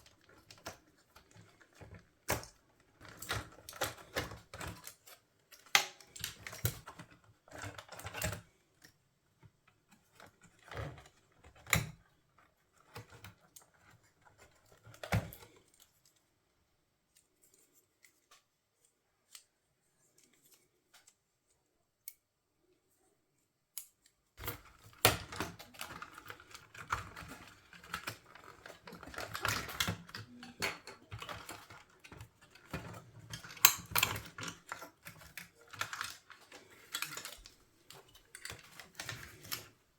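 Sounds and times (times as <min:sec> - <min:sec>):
plastic parts clicking and rattling: 0:00.0 - 0:16.3, 0:23.8 - 0:39.9.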